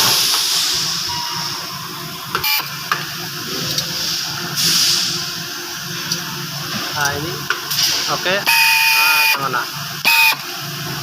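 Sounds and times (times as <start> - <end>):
compressed air hissing: 0.0 - 1.1, 3.9 - 5.3.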